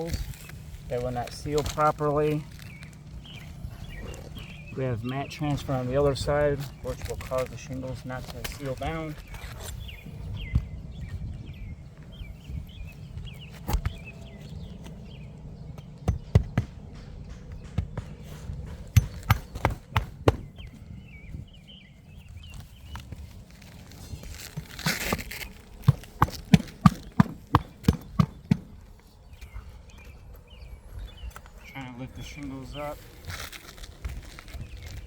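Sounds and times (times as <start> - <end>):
scraping rustle: 0.0 - 10.2, 21.8 - 27.9
footsteps on shingle roof: 0.0 - 35.0.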